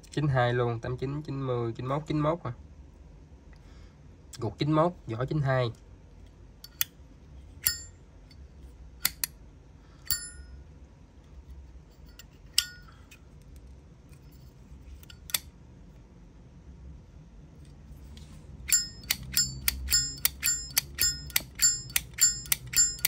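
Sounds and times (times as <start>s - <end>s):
metallic lighter clicks: 9.0s - 9.3s, 18.7s - 23.0s.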